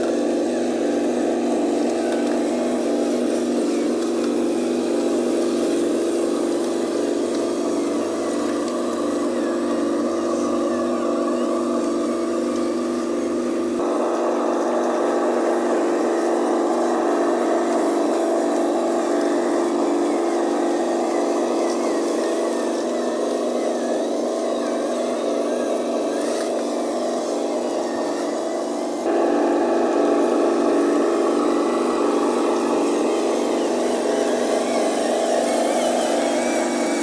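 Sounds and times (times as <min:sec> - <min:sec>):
model truck motor drone: 0:00.0 - 0:37.0.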